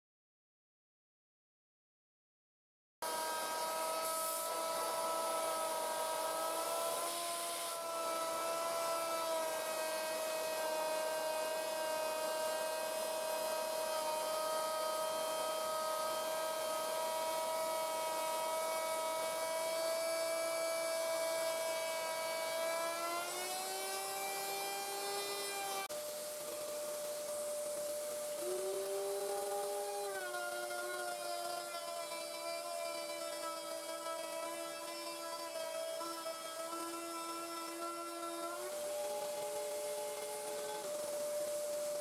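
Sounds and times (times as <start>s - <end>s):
belt grinder motor whine: 3.0s - 42.0s.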